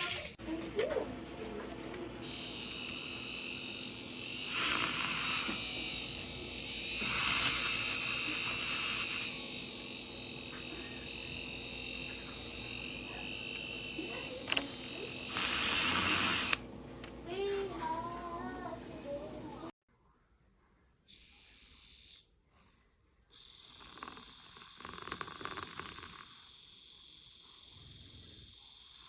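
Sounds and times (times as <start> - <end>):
milk frother motor buzzing: 0.0 - 18.8, 23.3 - 29.0
hiss: 7.0 - 9.4.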